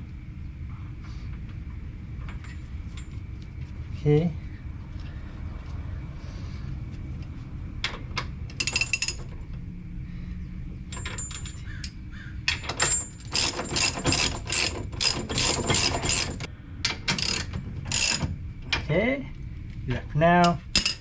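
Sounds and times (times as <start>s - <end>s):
ratchet wrench clicking: 11.0s - 16.5s, 17.1s - 18.3s.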